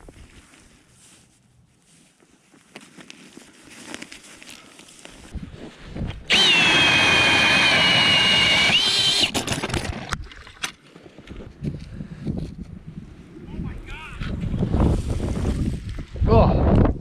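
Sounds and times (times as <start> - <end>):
power drill whine: 6.3 - 10.2.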